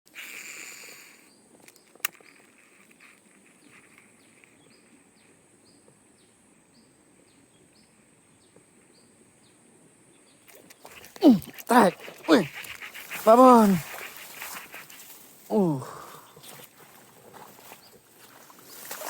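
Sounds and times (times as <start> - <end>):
brief hiss: 0.1 - 1.3
insect chorus buzzing: 0.1 - 6.3, 10.5 - 19.0.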